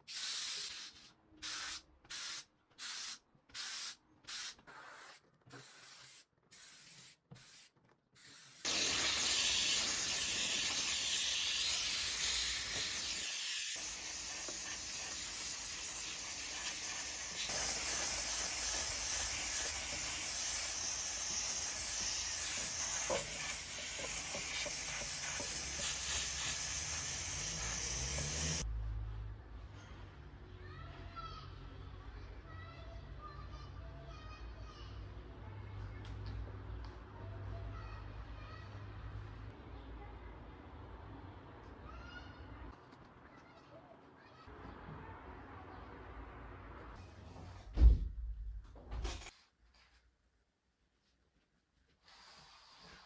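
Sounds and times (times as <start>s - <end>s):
spray bottle squirting: 0.0s - 28.6s
loud hissing rush: 8.7s - 28.6s.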